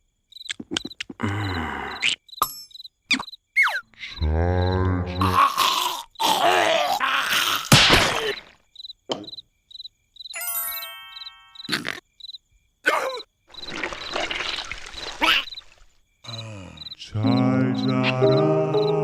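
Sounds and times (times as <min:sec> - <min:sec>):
faint high chirping: 0:08.7 - 0:19.0.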